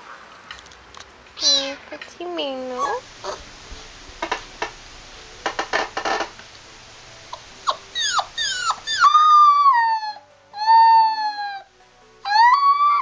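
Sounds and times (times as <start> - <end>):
dog yipping: 7.6 - 13.0
dog howling whines: 7.7 - 13.0.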